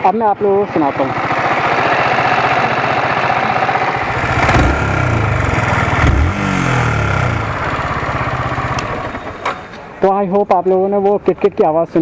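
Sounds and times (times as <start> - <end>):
motorcycle engine idling and revving: 1.2 - 9.9
engine ticking: 4.0 - 9.8.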